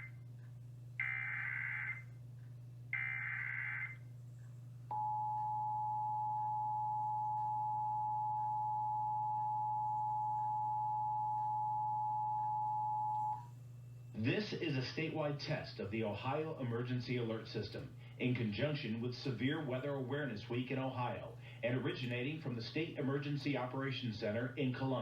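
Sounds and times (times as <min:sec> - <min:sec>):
low steady hum: 0:00.0 - 0:25.0
steady two-tone beep: 0:04.9 - 0:13.4.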